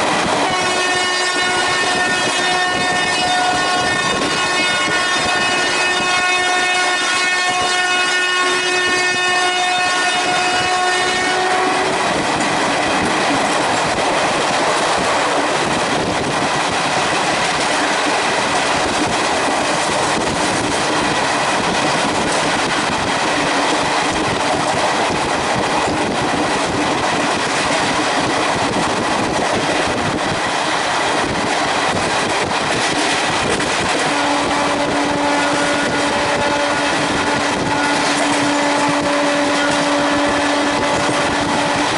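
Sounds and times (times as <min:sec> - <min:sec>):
train wheels rushing on track: 0:00.0 - 0:41.9
train horn blast: 0:00.3 - 0:12.2, 0:33.8 - 0:41.9
low train horn note: 0:00.4 - 0:12.2, 0:33.9 - 0:41.9.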